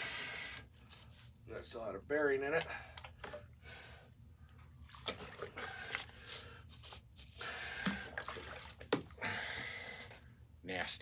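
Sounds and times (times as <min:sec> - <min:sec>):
splashing and scrubbing in water: 0:04.8 - 0:09.1.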